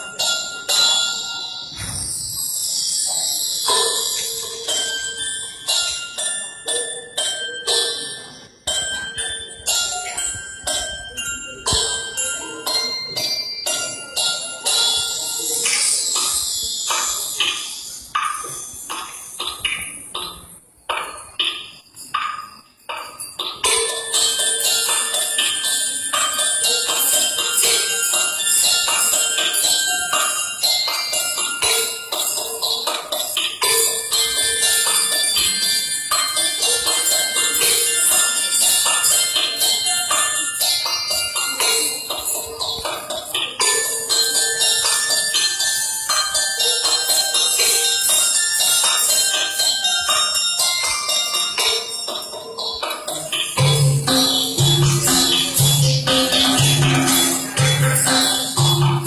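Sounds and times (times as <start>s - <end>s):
school bell chime tones: 22.4s - 59.0s.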